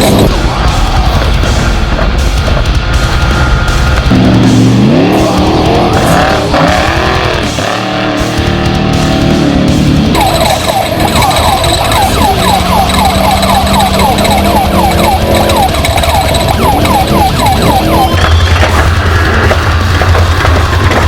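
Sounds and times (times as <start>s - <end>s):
steady low drone: 0.0s - 21.0s
siren-like falling chirp: 10.1s - 19.5s.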